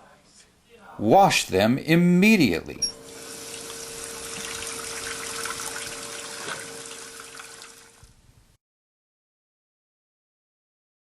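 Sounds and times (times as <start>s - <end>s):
water running from a tap: 3.0s - 8.1s.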